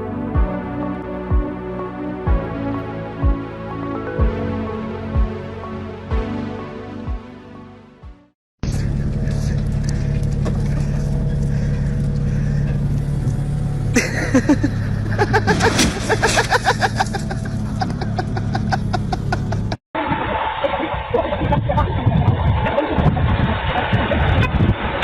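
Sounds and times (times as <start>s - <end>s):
vehicle engine running: 8.6s - 19.8s.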